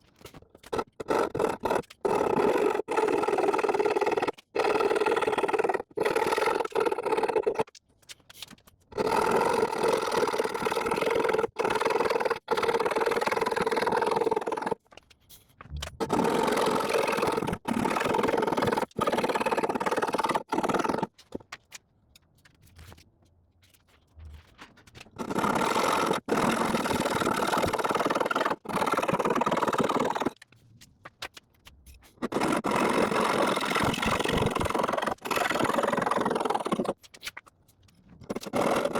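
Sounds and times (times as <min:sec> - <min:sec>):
hand saw cutting wood: 0:00.5 - 0:07.7, 0:09.0 - 0:14.8, 0:16.0 - 0:21.4, 0:25.2 - 0:30.4, 0:32.2 - 0:37.0, 0:38.3 - 0:38.9.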